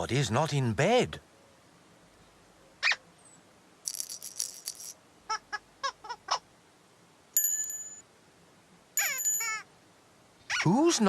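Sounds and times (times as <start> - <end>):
quick squeaky pips: 3.9 - 5.0
short rattle: 3.9 - 5.0
bright bell-like chime: 7.4 - 8.0, 9.0 - 9.6.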